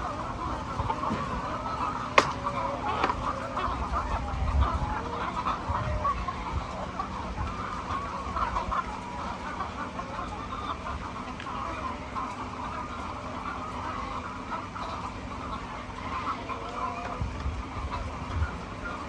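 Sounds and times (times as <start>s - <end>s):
hens clucking: 0.0s - 19.0s.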